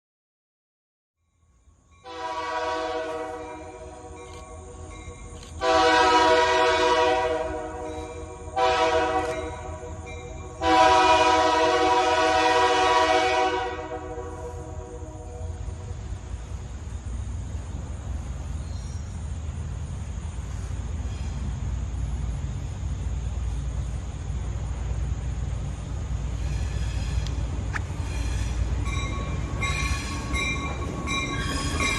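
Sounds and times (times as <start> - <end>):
diesel locomotive engine rumbling: 1.2 - 31.9
locomotive air horn blasts: 2.0 - 4.8, 5.6 - 15.8.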